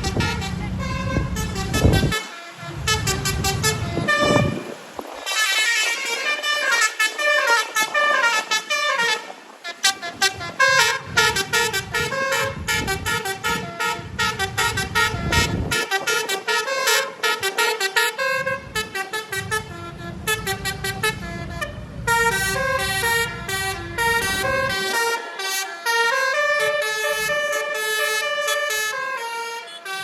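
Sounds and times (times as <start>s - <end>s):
bus horn playing melodic tune: 0.0s - 30.0s.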